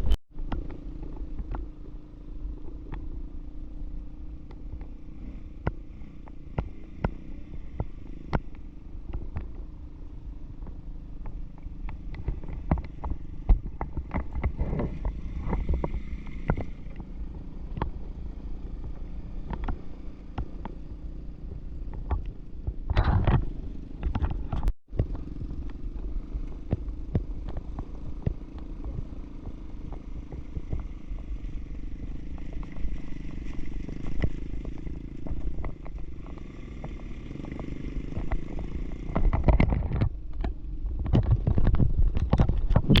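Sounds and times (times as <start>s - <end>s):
atv engine running: 0.0s - 43.0s
knocks and clatter: 26.5s - 43.0s.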